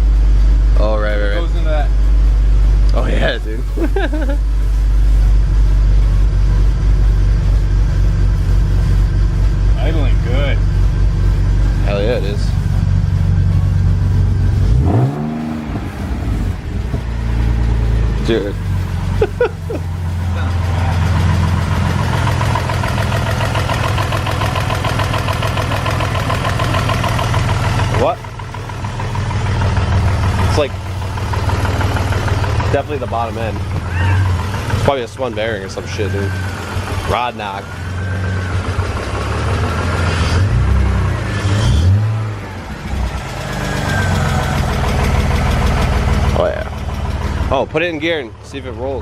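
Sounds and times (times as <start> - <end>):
car engine idling with knock: 0.0 - 41.4, 42.2 - 49.0.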